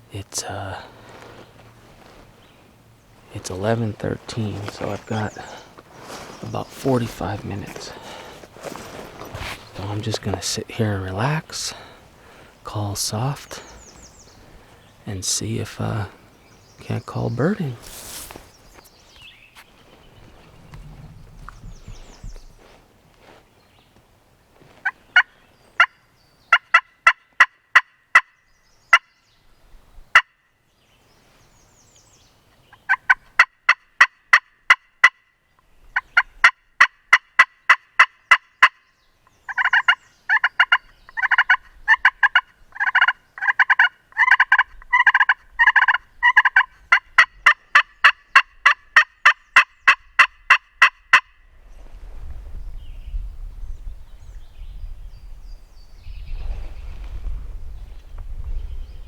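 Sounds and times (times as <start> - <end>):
turkey call hen yelps: 39.5 - 51.3.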